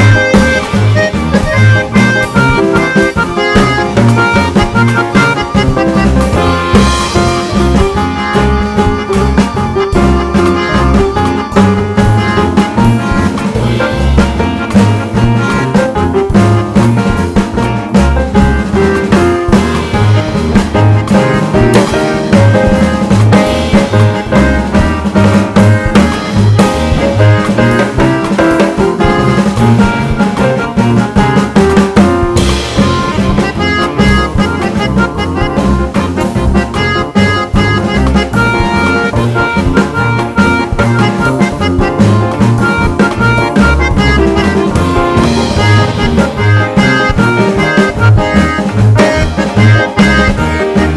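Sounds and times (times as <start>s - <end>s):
jazzy music with drums and brass: 0.0s - 50.9s.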